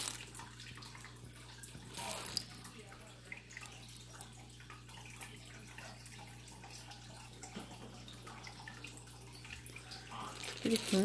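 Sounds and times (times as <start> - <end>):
jewelry pieces clicking and clinking: 0.0 - 0.4, 1.9 - 2.5, 10.3 - 11.0
low electrical hum: 0.0 - 11.0.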